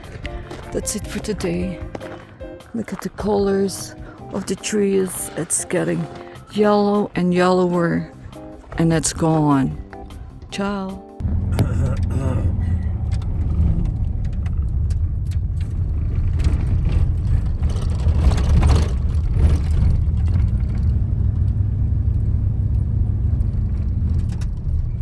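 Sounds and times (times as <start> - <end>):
road noise: 0.0 - 25.0
car engine: 11.2 - 25.0.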